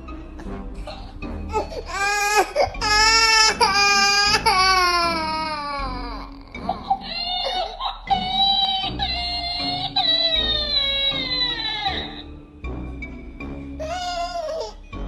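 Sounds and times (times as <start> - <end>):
baby crying: 1.5 - 12.3, 13.8 - 14.8.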